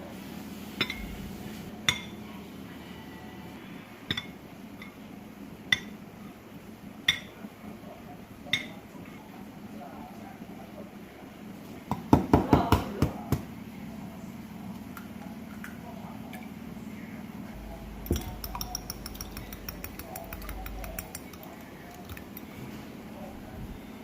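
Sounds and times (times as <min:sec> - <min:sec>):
dishes and cutlery clinking: 0:00.8 - 0:01.1, 0:17.9 - 0:22.9.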